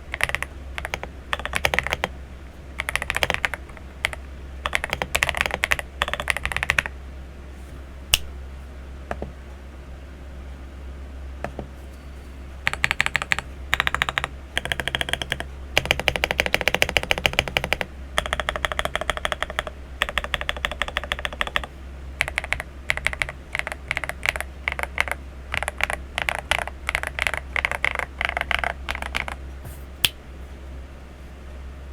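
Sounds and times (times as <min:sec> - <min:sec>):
mechanical keyboard typing: 0:00.0 - 0:02.1, 0:02.8 - 0:06.9, 0:12.7 - 0:29.4.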